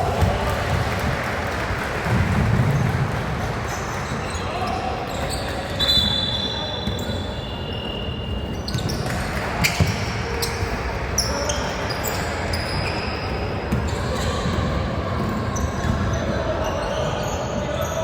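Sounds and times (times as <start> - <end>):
sneakers squeaking: 2.6 - 18.0
basketball bouncing: 8.7 - 10.8.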